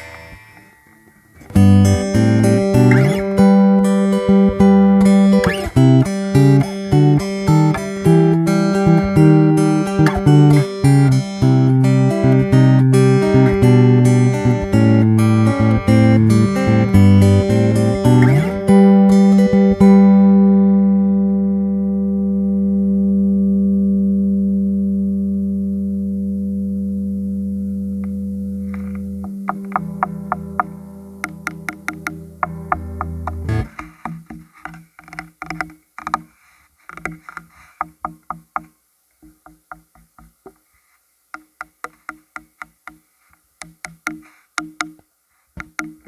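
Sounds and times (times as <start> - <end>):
guitar chord ringing: 0.0 - 34.0
acoustic guitar plucked notes: 0.0 - 36.2, 45.6 - 46.0.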